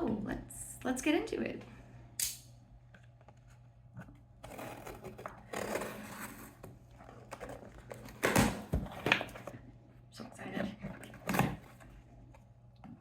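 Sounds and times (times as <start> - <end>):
cardboard box being cut open: 4.4 - 9.1.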